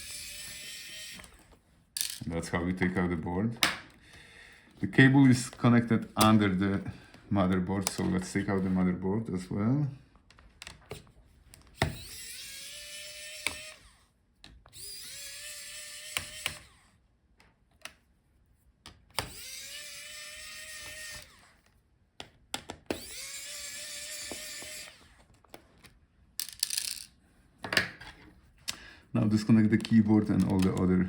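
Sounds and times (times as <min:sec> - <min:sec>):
electric screwdriver spinning: 0:00.0 - 0:02.2, 0:11.6 - 0:14.1, 0:14.7 - 0:17.0, 0:19.1 - 0:21.7, 0:22.9 - 0:25.3
small parts clicking: 0:02.0 - 0:02.2, 0:26.4 - 0:27.1.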